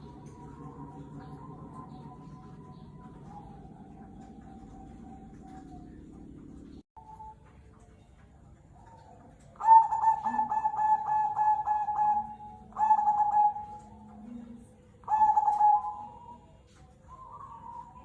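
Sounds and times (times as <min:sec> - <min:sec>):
dove cooing: 0:00.0 - 0:07.3, 0:08.8 - 0:18.0.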